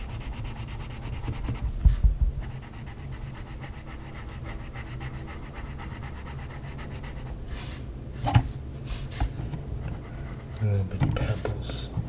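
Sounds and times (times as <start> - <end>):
coloured pencil scratching on paper: 0.0 - 1.7, 2.4 - 7.4.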